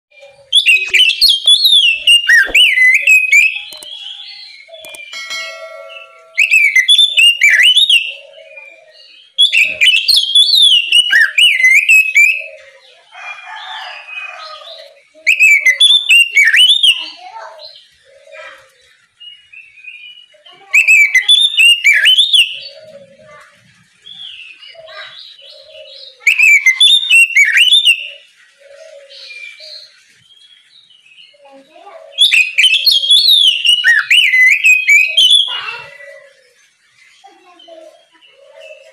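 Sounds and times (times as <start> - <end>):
soft bird calls: 0.1 - 38.9
bird singing fast whistles: 0.5 - 3.8, 6.2 - 8.1, 9.4 - 12.4, 20.8 - 22.6, 26.3 - 28.0, 32.2 - 35.6.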